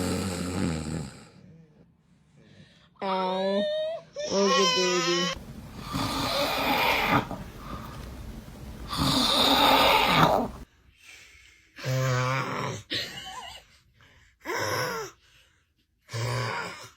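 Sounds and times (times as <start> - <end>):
man snoring: 0.0 - 1.4, 5.4 - 10.6.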